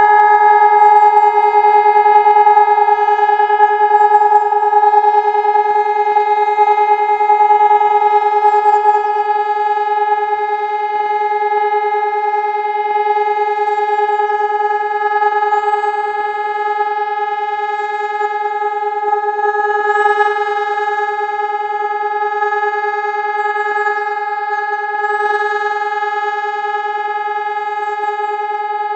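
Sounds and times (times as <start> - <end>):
siren steady tone: 0.0 - 28.9.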